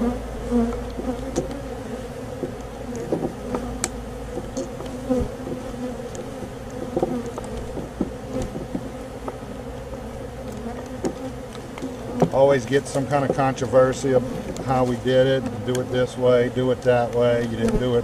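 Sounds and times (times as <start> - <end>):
bees buzzing: 0.0 - 18.0.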